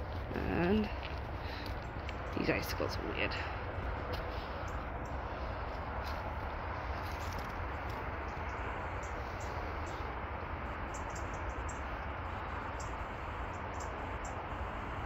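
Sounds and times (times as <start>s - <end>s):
constant hiss: 0.0s - 15.0s
wind rumbling on microphone: 0.0s - 15.0s.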